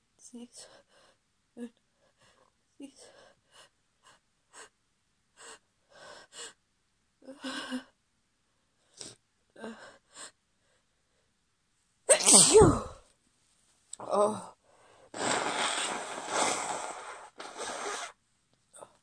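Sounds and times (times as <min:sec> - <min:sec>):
woman sneezing: 0:12.1 - 0:13.0.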